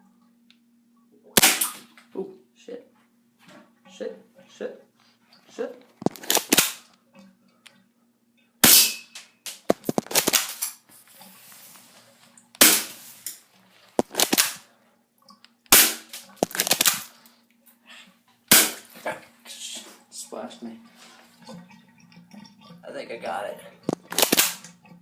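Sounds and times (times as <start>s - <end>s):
airsoft gun single shots: 1.4s - 1.9s, 6.2s - 6.8s, 8.6s - 9.1s, 12.6s - 13.0s, 14.1s - 14.6s, 15.7s - 17.1s, 18.5s - 18.8s, 24.1s - 24.7s.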